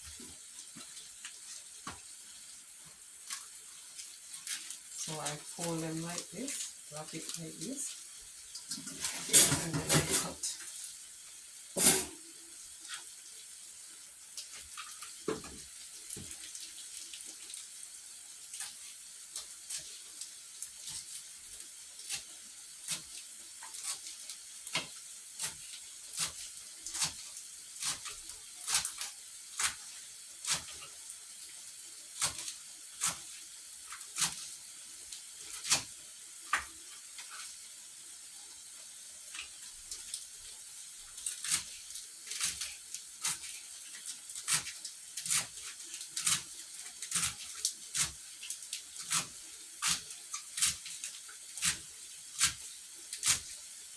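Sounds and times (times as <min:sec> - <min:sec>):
knife slicing greens: 0:24.7 - 0:29.8, 0:44.3 - 0:48.2, 0:49.0 - 0:53.5.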